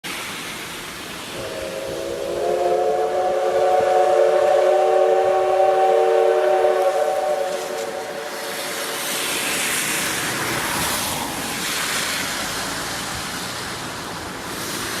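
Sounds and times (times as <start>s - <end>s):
steam hissing: 0.0s - 15.0s
steam whistle blast: 1.3s - 10.0s.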